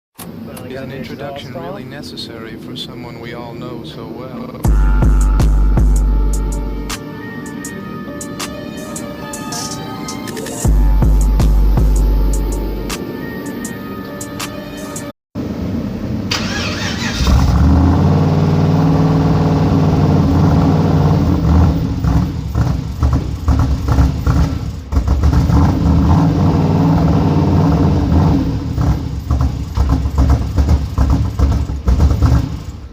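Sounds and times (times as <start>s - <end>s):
engine running with low note: 4.4s - 7.1s, 10.7s - 13.0s, 15.4s - 32.9s
starter cranking engine: 16.3s - 17.6s.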